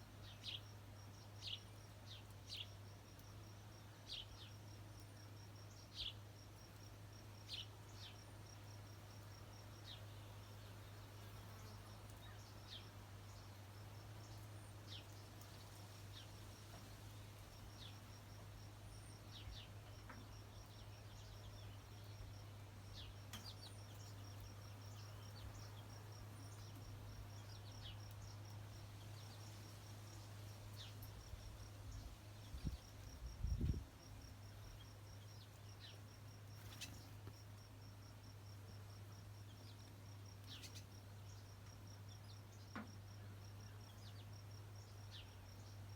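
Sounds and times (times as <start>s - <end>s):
insect trill: 5.4s - 45.9s
bird chirps: 40.5s - 40.9s.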